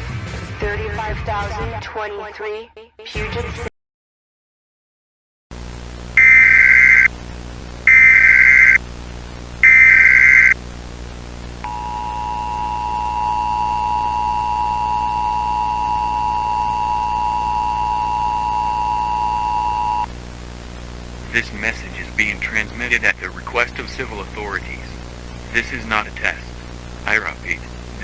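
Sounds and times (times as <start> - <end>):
low hum: 5.6 - 28.0
loud data bursts: 6.2 - 7.1, 7.8 - 8.8, 9.6 - 10.6
two-tone attention signal: 6.2 - 7.1, 7.9 - 8.8, 9.6 - 10.6, 11.7 - 20.1.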